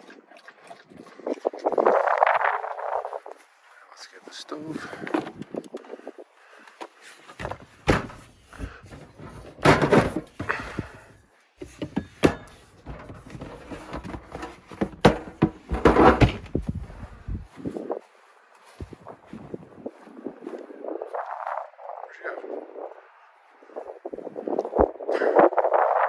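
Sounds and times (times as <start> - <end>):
knocks and thumps: 7.4 - 11.0, 11.6 - 17.5.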